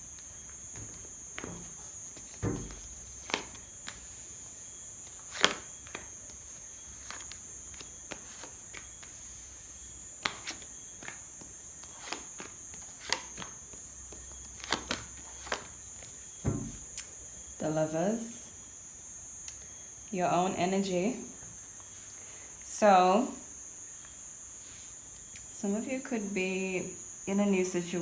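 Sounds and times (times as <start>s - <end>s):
cards snapping and tapping on table: 2.2s - 4.1s, 5.2s - 6.4s, 10.2s - 17.1s.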